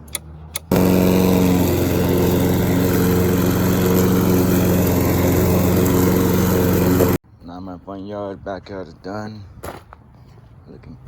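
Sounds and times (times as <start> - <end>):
lawn mower engine running: 0.6 - 7.2.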